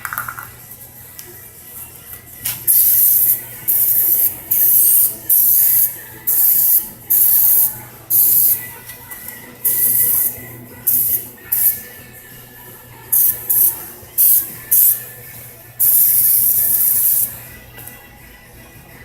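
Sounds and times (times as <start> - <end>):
spray can hissing: 2.7 - 8.6, 9.6 - 11.8, 13.2 - 15.0, 15.8 - 17.3.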